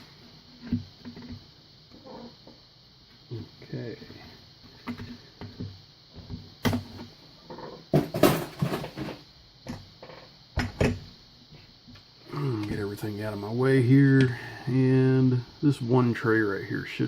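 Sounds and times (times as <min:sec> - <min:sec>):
tools clattering on a workbench: 0:07.5 - 0:11.0.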